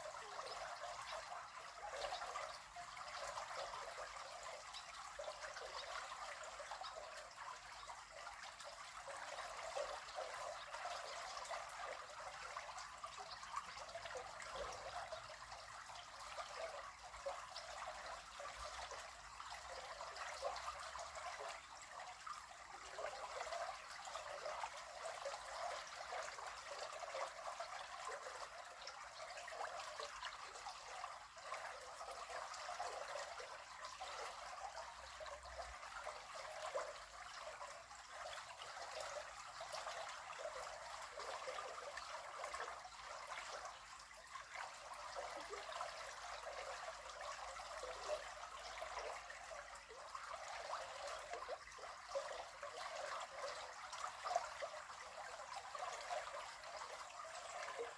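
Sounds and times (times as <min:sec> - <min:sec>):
river water flowing: 0:32.5 - 0:57.9.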